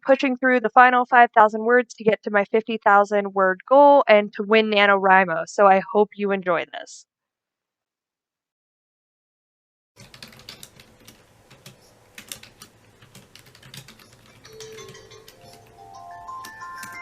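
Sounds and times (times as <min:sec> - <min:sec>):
fast keyboard typing: 0:10.0 - 0:17.0
soft musical tones: 0:13.9 - 0:17.0.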